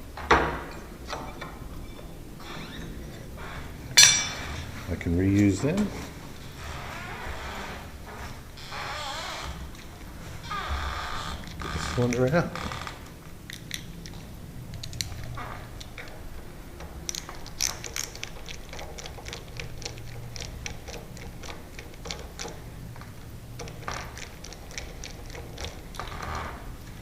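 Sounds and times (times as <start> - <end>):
steady low hum: 0.0 - 27.0
metallic lock clicks and rattles: 13.4 - 26.1.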